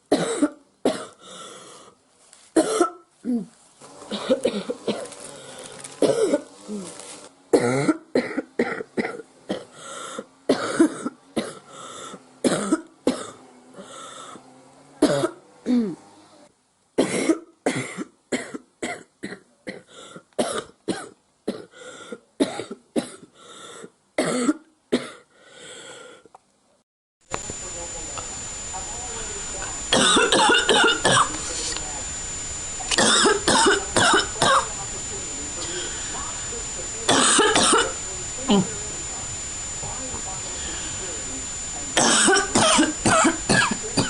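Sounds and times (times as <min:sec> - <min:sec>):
girl coughing: 0:00.1 - 0:01.2, 0:02.6 - 0:03.5, 0:04.1 - 0:05.2, 0:06.0 - 0:06.9, 0:07.6 - 0:09.7, 0:10.5 - 0:11.6, 0:12.4 - 0:13.4, 0:17.0 - 0:21.7, 0:22.4 - 0:23.3, 0:24.2 - 0:25.2, 0:29.9 - 0:31.4, 0:32.9 - 0:34.7, 0:37.1 - 0:38.7, 0:42.0 - 0:44.0.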